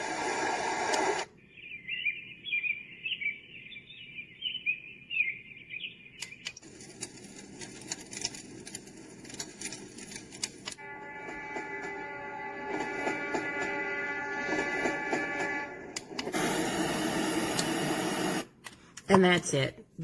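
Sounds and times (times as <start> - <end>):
steady white noise: 0.0 - 1.2
sharp clicks: 0.8 - 1.3, 6.2 - 6.6
birdsong chirping: 1.1 - 7.7.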